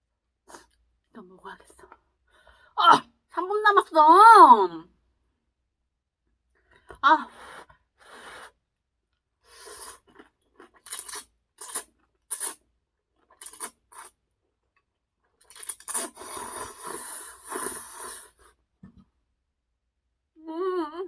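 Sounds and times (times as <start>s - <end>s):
noodles being slurped: 9.5s - 12.6s, 13.3s - 14.2s, 15.4s - 18.5s.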